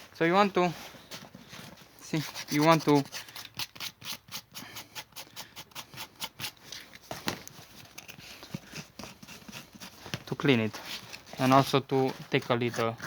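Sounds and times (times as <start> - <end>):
sandpaper rubbing on rubber: 2.0 - 6.6, 8.0 - 13.0.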